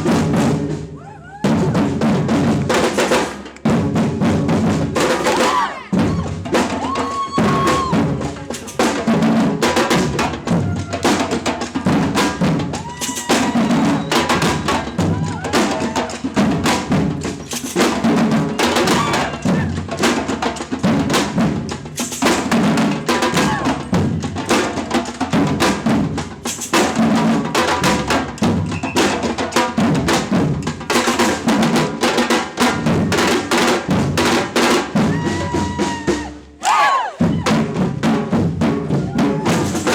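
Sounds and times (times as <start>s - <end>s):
samba drums playing driving rhythm: 0.0s - 39.9s.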